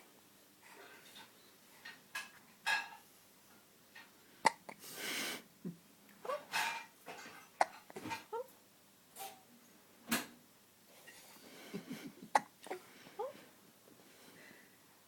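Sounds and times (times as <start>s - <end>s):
baby hiccuping: 4.4s - 4.8s, 7.5s - 8.5s, 12.3s - 13.3s.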